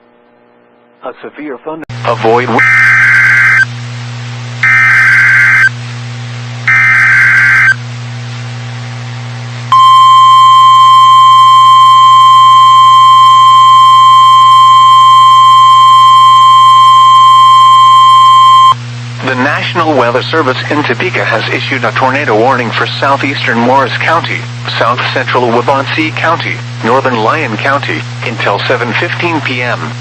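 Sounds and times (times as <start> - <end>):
steady alarm tone: 2.6 - 3.7, 4.6 - 5.8, 6.6 - 7.8, 9.7 - 18.8
warbling data screeches: 2.6 - 3.7, 4.6 - 5.7, 6.7 - 7.8.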